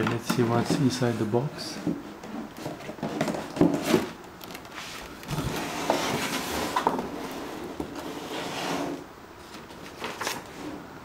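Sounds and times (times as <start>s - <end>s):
packaging scraping and rustling: 2.0s - 10.8s.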